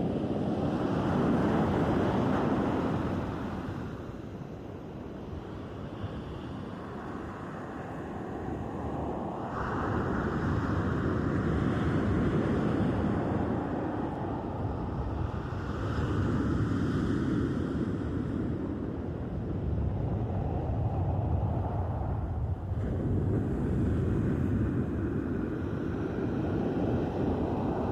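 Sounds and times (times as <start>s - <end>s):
wind on the microphone: 0.0s - 27.9s
sea surf washing ashore: 22.7s - 27.9s.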